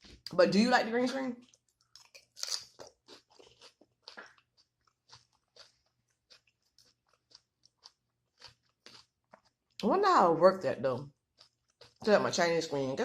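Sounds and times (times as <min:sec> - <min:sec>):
crunchy chewing: 0:01.4 - 0:09.8, 0:11.0 - 0:12.3.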